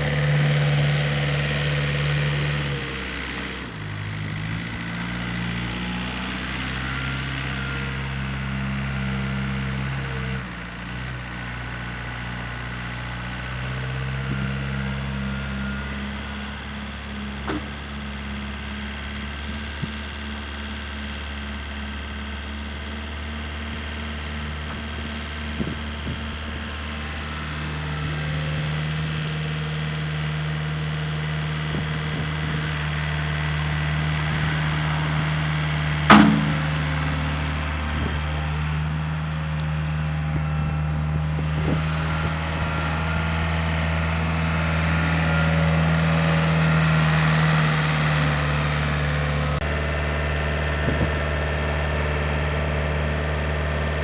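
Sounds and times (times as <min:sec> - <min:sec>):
diesel engine running: 0:00.0 - 0:54.0
sharp bang: 0:36.1 - 0:36.9.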